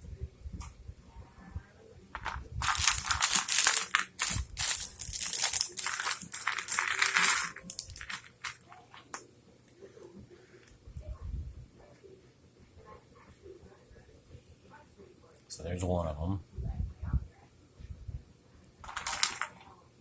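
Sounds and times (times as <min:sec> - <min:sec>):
plastic lego pieces clattering: 0:02.2 - 0:08.6, 0:18.8 - 0:19.6.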